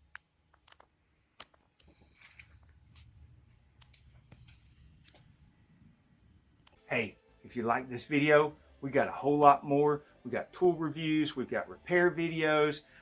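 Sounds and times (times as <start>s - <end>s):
soft hisses: 1.3s - 7.0s.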